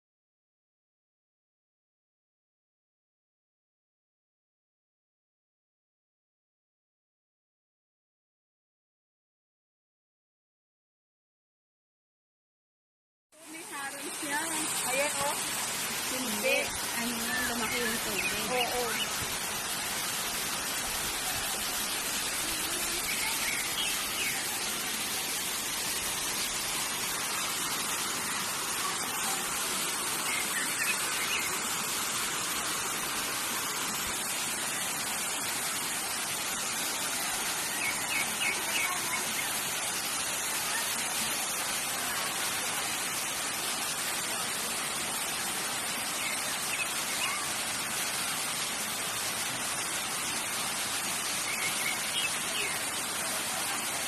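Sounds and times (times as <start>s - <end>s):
water rushing: 13.4s - 54.0s.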